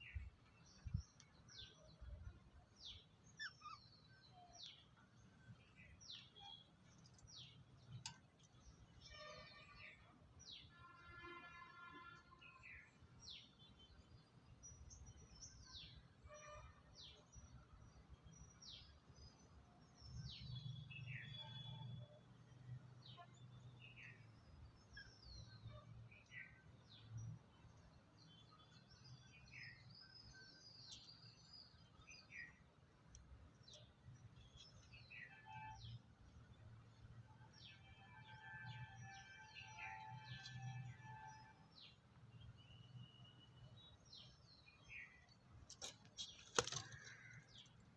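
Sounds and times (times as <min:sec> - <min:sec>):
lovebirds chirping: 0:00.0 - 0:10.7, 0:23.0 - 0:47.9.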